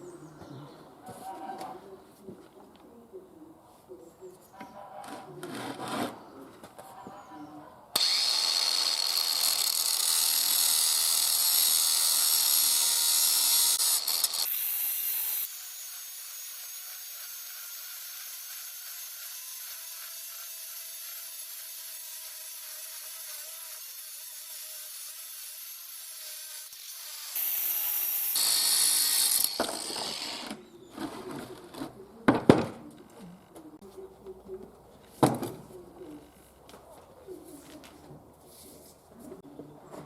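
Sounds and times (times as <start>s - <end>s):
power tool on metal: 8.0s - 30.6s.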